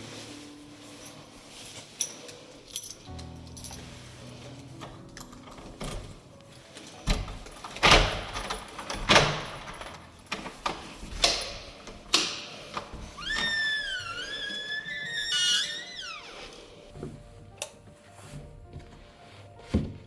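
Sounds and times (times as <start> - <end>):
household knocks and clunks: 19.6 - 20.0.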